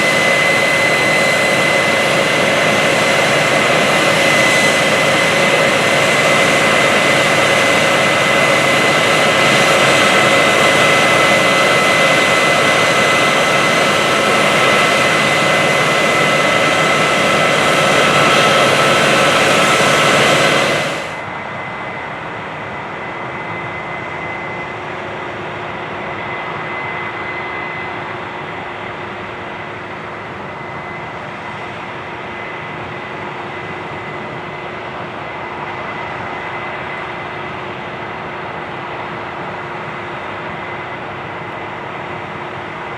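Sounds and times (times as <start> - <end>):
thin high whine: 0.0 - 28.2
harvest machine engine and fan: 0.0 - 42.9.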